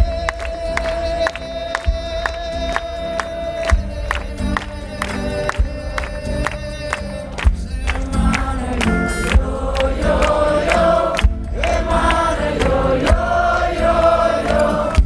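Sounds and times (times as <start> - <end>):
live band music: 0.0 - 15.0
voices singing wordlessly: 7.2 - 15.0.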